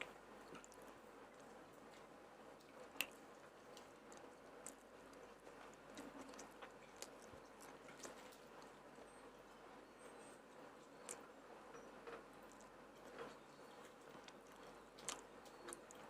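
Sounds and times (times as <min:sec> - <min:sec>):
person chewing: 0:00.0 - 0:09.1, 0:12.3 - 0:16.0.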